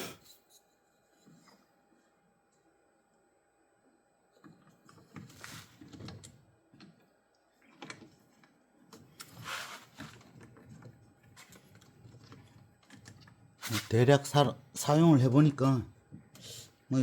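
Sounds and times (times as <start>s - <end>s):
rustling scrapes: 9.3s - 10.3s.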